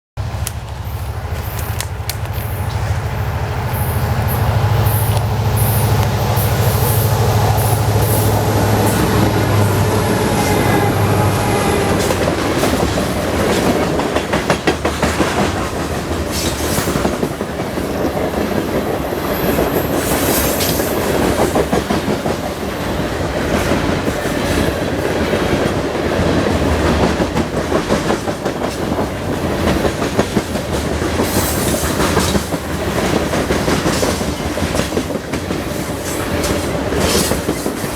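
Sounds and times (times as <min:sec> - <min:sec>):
diesel locomotive engines humming: 0:00.2 - 0:14.8
high wheel squeals: 0:03.8 - 0:12.3
train wheels clacking on rail joints: 0:03.8 - 0:37.9.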